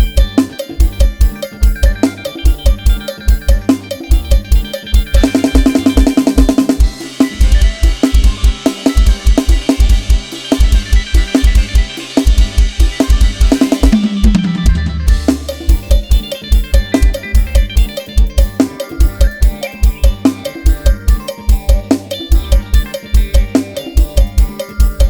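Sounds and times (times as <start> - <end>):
drum kit groove: 0.0 - 25.0.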